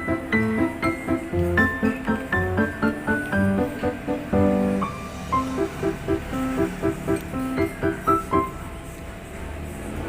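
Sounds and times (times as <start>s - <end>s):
instrumental background music: 0.0s - 8.7s.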